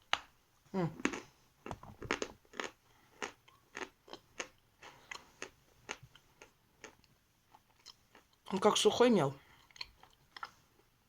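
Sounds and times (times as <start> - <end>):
person chewing chalk: 1.0 - 8.5.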